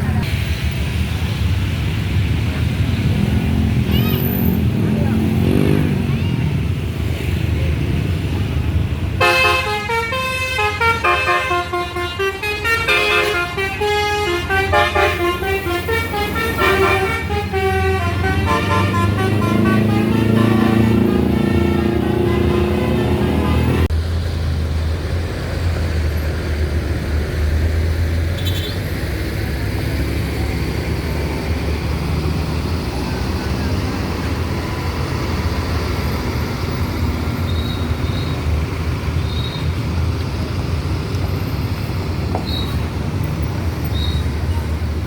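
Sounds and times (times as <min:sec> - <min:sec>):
bus engine idling: 0:00.0 - 0:05.3, 0:06.1 - 0:45.0
road traffic: 0:00.0 - 0:45.0
multi-tone bus horn: 0:09.2 - 0:23.9.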